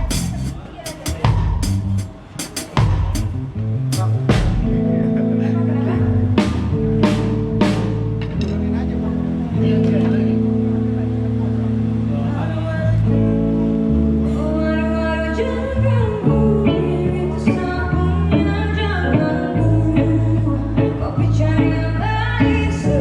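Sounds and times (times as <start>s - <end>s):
live band through pa: 0.0s - 23.0s
person singing: 14.2s - 23.0s.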